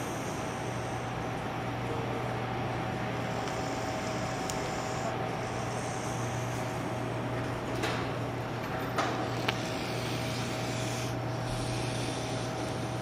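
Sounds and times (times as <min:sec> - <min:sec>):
steady low hum: 0:00.0 - 0:13.0
pet snoring: 0:03.3 - 0:06.9, 0:09.6 - 0:13.0.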